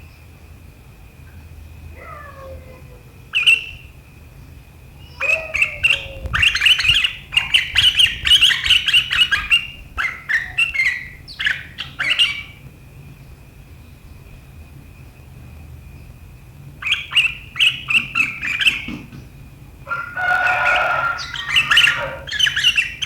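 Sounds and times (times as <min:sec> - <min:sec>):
bird chattering sharp notes: 0:05.2 - 0:12.6.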